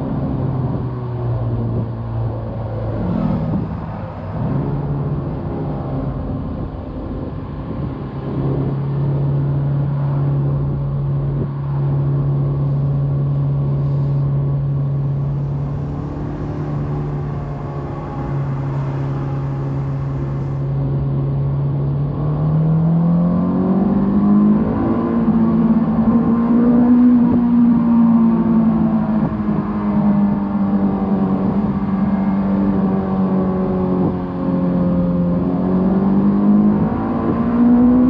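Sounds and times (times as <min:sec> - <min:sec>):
tyre and road noise: 0:00.0 - 0:38.0
car engine pulling: 0:12.3 - 0:34.1.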